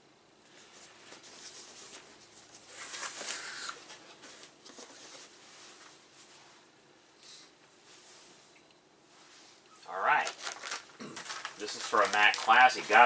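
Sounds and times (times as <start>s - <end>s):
plastic packaging crinkling: 9.9s - 13.0s.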